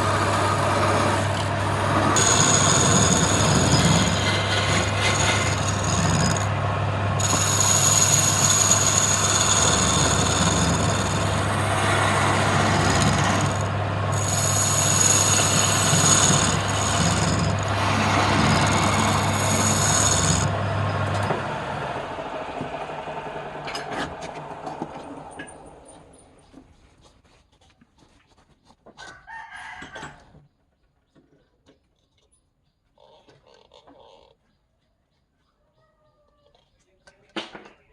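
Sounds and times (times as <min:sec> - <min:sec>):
turning tool cutting wood: 0:00.0 - 0:25.6
lathe motor hum: 0:00.0 - 0:26.2.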